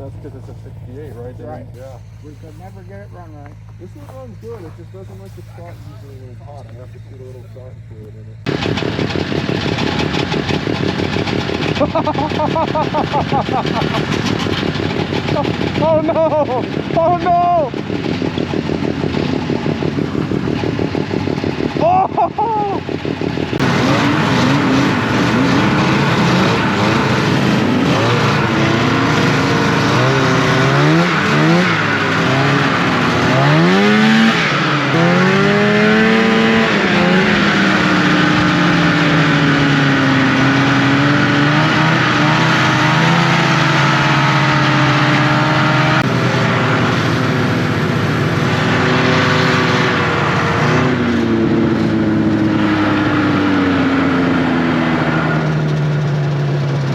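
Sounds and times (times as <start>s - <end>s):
snowmobile engine revving: 0.0s - 56.9s.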